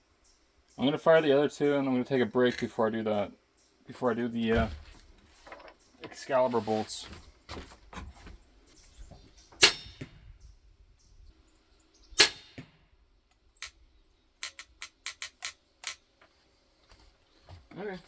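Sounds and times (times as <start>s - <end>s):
crossbow shots: 9.6s - 10.2s, 12.2s - 12.8s.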